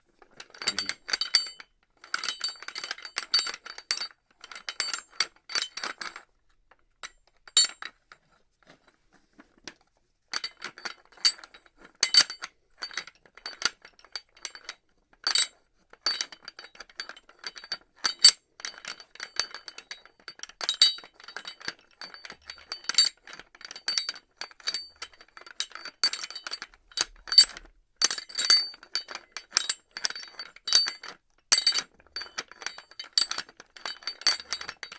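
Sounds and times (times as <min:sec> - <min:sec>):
metal pulley clattering: 0:00.5 - 0:01.0.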